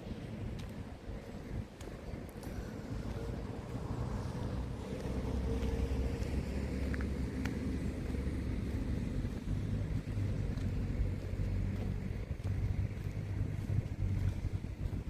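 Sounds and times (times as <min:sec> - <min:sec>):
vehicle engine rumbling: 0:00.0 - 0:15.0
faint clicks: 0:01.7 - 0:03.2.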